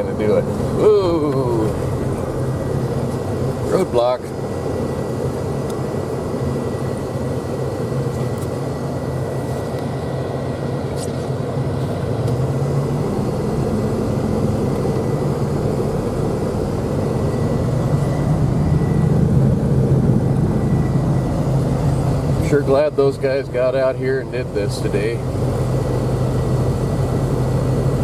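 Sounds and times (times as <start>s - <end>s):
faint high whine: 0.0s - 28.0s
road noise: 0.0s - 28.0s
vehicle engine running: 0.0s - 28.0s.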